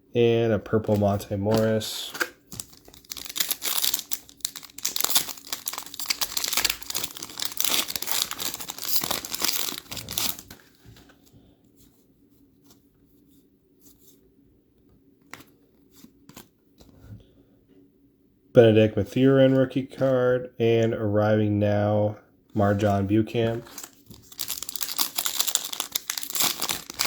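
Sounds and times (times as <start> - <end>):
card pack wrapper crinkling: 0.7 - 10.6, 23.5 - 27.0.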